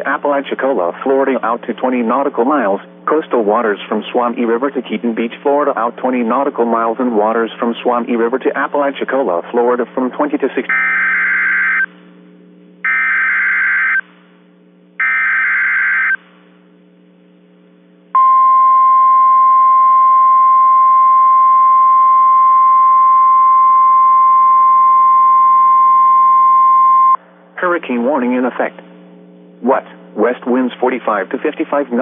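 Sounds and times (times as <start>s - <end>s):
steady warning alarm tone: 10.6s - 11.9s, 12.8s - 14.1s, 15.0s - 16.2s.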